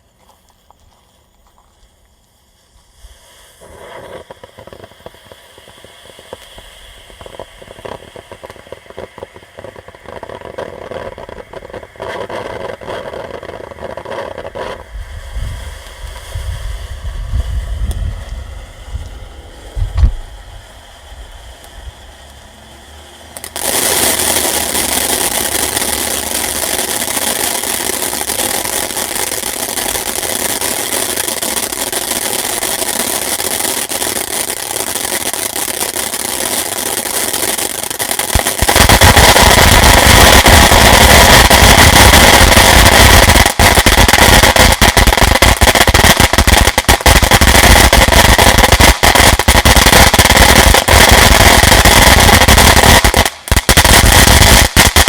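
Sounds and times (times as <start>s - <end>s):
firework fountain hissing: 0.0s - 55.0s
crackling pops: 3.6s - 14.9s, 23.4s - 55.0s.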